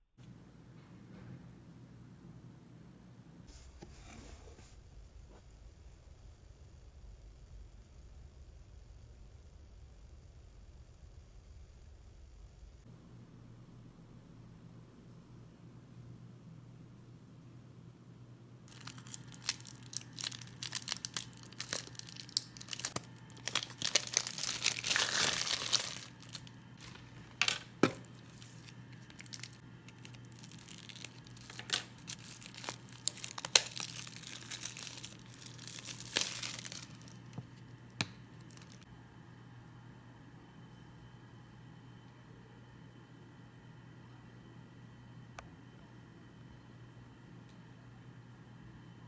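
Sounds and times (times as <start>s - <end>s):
packaging tearing and crinkling: 18.7s - 38.8s.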